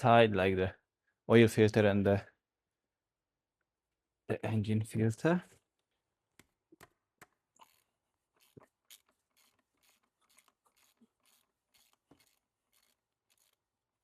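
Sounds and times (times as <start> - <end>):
hand tool scraping: 7.6 - 13.7.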